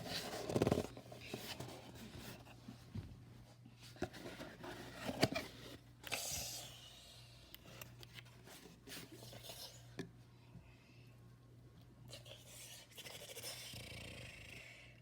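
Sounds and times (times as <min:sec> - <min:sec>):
rubbing and scraping handling noise: 0:00.0 - 0:06.0.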